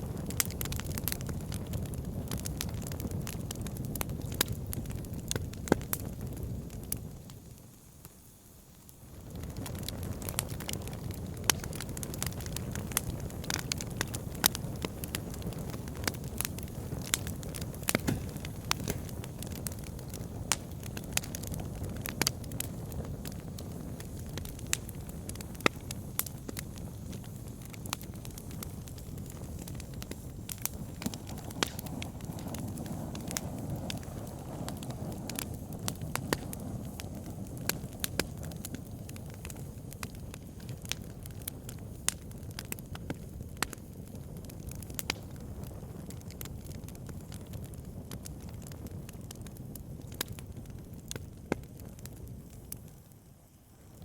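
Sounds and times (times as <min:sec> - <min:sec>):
fire burning in a fireplace: 0:00.0 - 0:54.0
wood crackling and popping: 0:00.0 - 0:54.0.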